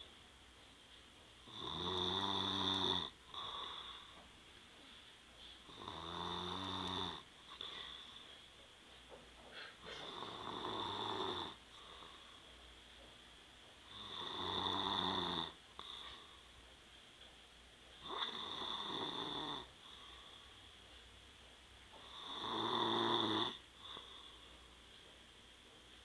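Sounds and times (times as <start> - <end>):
quiet breathing: 0.0 - 26.0
man snoring: 1.5 - 4.0, 5.7 - 7.3, 10.0 - 11.6, 13.9 - 15.6, 18.0 - 19.7, 22.0 - 24.0.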